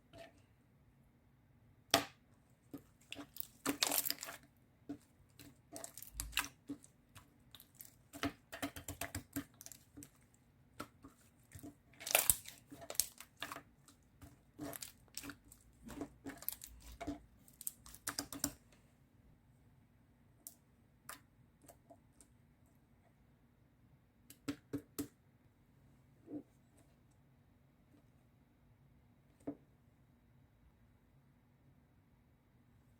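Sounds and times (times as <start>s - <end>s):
crinkling and rustling: 2.6s - 18.8s.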